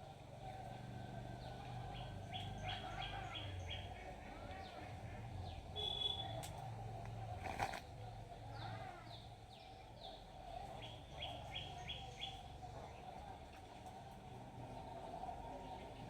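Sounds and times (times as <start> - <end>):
outdoor background noise: 0.0 - 16.0
small birds chirping and singing: 1.8 - 3.9, 8.6 - 12.5.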